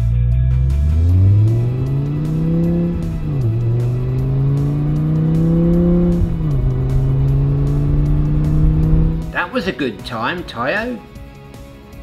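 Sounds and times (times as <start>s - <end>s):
music: 0.0s - 12.0s
car engine revving through gears: 0.3s - 9.4s.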